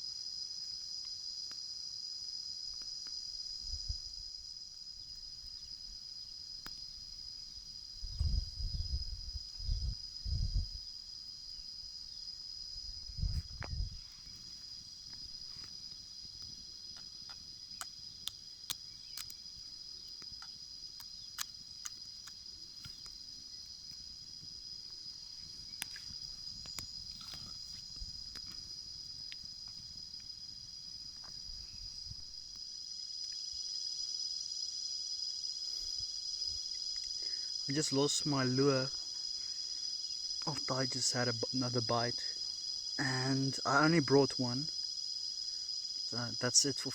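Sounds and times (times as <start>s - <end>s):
insect chorus chirring: 0.0s - 46.9s.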